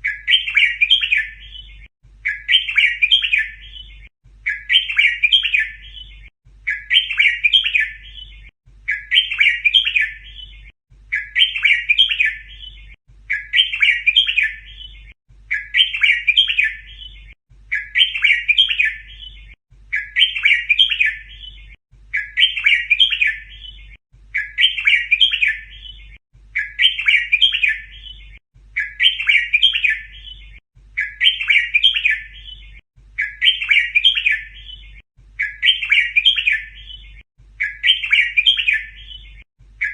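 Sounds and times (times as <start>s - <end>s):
bulbul chirpy song: 0.0s - 39.9s.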